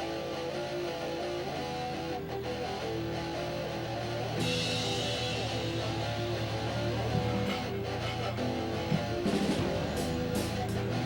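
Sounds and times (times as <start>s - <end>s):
guitar-led music: 0.0s - 11.0s
bright hiss: 4.4s - 7.6s.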